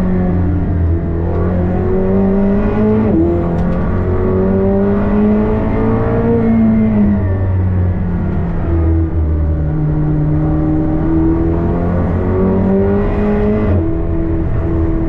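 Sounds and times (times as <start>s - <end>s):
race car engine at full throttle: 0.0s - 15.0s.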